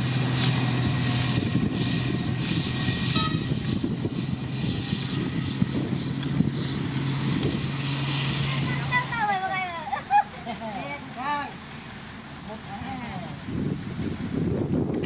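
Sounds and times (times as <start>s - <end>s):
diesel engine of heavy machinery: 0.0s - 15.0s.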